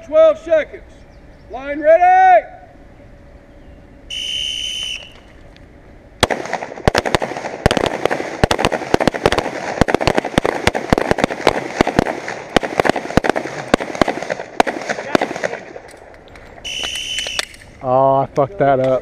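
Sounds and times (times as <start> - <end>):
rapid pistol shots: 6.2 - 15.9.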